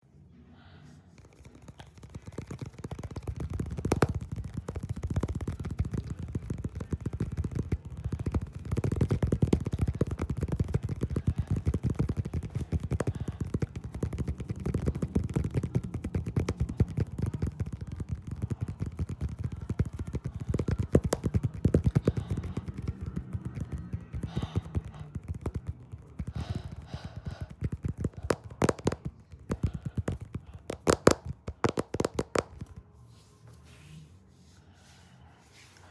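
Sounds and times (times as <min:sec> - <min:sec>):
rapid tapping: 0:01.2 - 0:32.8.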